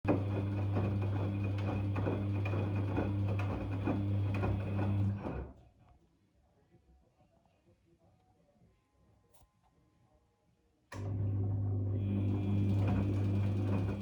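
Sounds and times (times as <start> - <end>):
washing machine humming: 0.0 - 5.5, 11.0 - 14.0.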